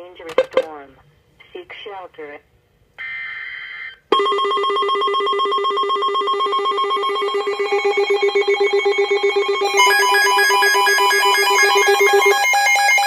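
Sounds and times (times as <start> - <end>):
high beeps: 4.2 - 12.4
pulsing electronic alert tone: 4.2 - 13.0
higher electronic tone: 6.8 - 12.5.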